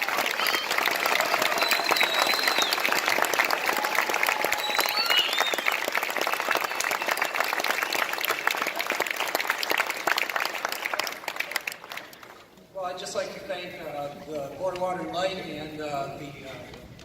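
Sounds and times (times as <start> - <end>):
crowd applauding: 0.0 - 12.5.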